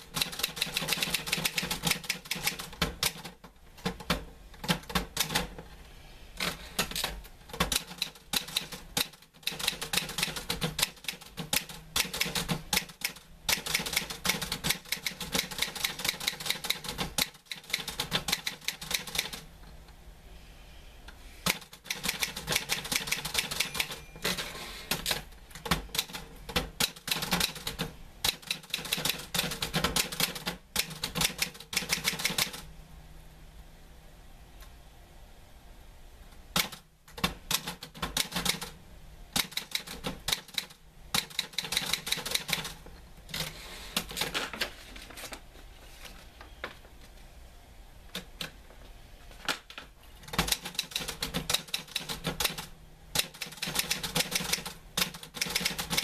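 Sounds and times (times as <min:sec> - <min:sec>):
typewriter keys striking: 0:00.0 - 0:05.6, 0:06.4 - 0:19.4, 0:21.4 - 0:32.6, 0:36.6 - 0:38.7, 0:39.4 - 0:44.6, 0:50.2 - 0:56.0.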